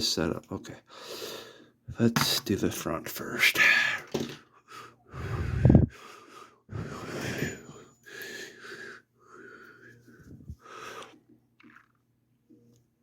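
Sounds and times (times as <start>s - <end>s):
person breathing wheezily: 4.6s - 11.2s.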